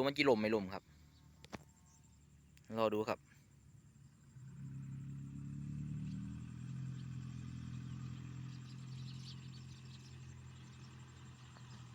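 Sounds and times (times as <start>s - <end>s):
small engine humming: 4.1s - 11.9s.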